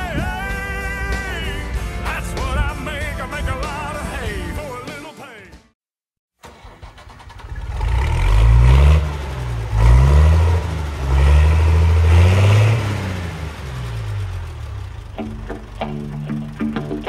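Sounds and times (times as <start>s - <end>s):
guitar music: 0.0s - 5.0s, 15.1s - 17.0s
machinery engine revving: 6.4s - 17.0s.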